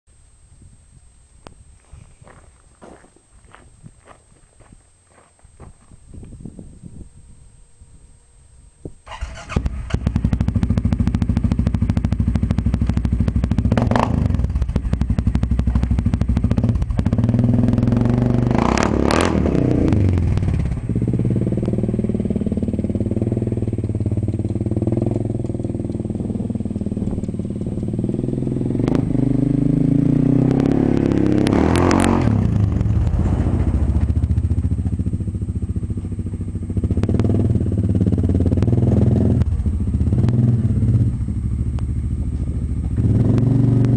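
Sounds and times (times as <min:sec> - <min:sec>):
atv engine idling and revving: 0:09.1 - 0:43.9.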